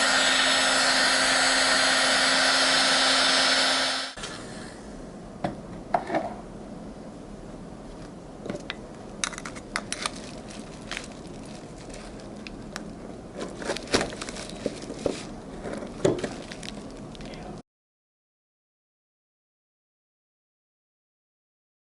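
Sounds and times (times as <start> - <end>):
low background hum: 4.2 - 17.6.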